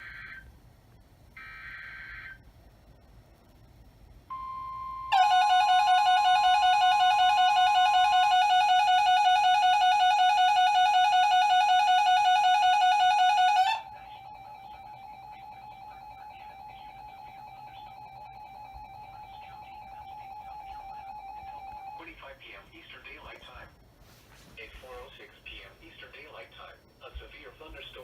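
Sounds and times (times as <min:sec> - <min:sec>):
steady warning alarm tone: 0:04.3 - 0:22.1.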